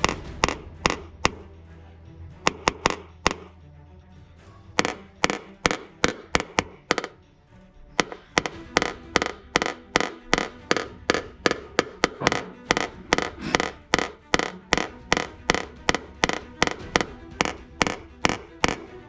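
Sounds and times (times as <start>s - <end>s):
background music: 0.0s - 19.0s.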